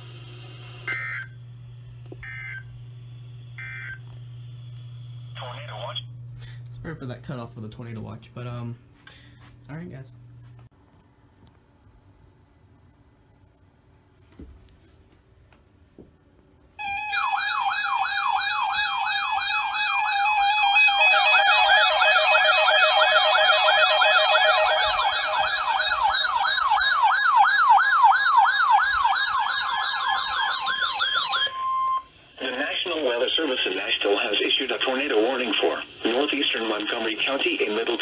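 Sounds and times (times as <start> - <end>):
electronic siren-like warble: 16.8 - 32.2.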